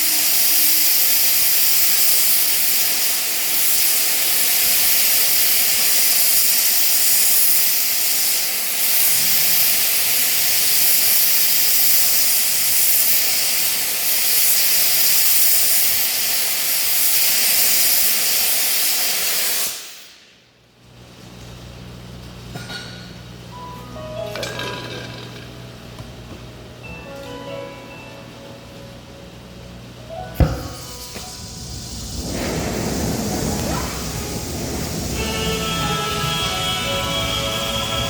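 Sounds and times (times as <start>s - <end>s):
gas torch flame hissing: 0.0s - 20.4s, 30.1s - 38.0s.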